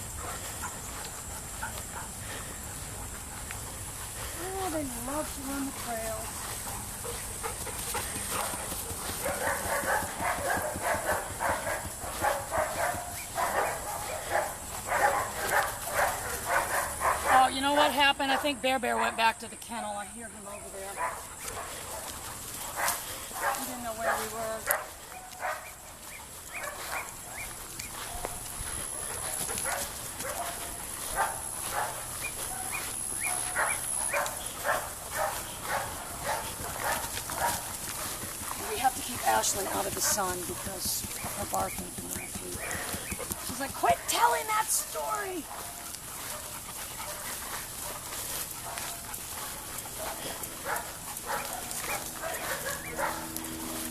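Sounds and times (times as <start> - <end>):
dogs barking: 0.0 - 19.5, 20.6 - 53.9.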